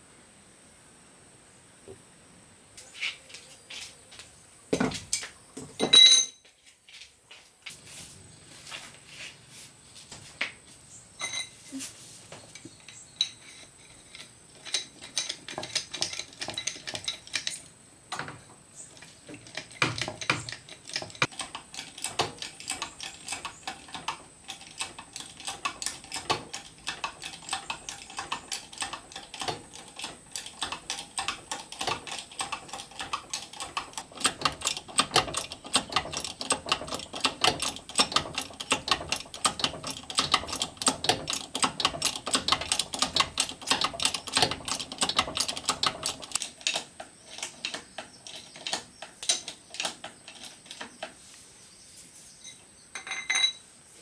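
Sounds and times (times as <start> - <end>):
metallic clicking and tapping: 19.0 - 51.2.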